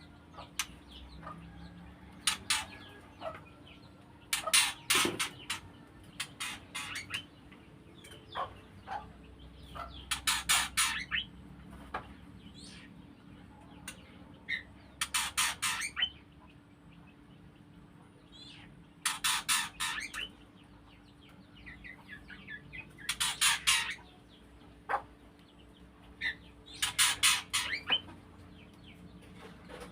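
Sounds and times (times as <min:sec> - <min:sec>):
bird harsh rattling calls: 0:02.1 - 0:03.6, 0:04.3 - 0:07.4, 0:08.0 - 0:11.3, 0:14.5 - 0:16.2, 0:18.4 - 0:20.5, 0:21.8 - 0:25.2, 0:26.2 - 0:28.6.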